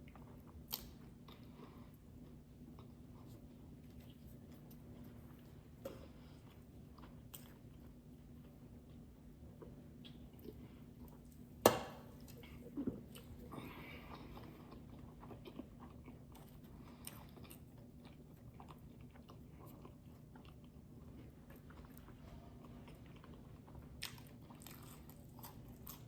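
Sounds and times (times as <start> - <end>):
chewing with small clicks: 0.0 - 11.5, 12.2 - 26.0
food crunching: 0.0 - 26.0.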